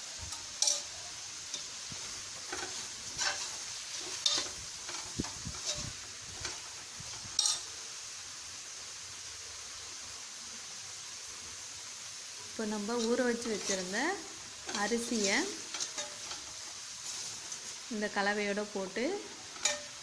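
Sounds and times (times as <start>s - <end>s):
food sizzling: 0.0s - 20.0s
spoon scraping a pot: 1.5s - 7.7s, 14.6s - 17.3s, 19.5s - 20.0s.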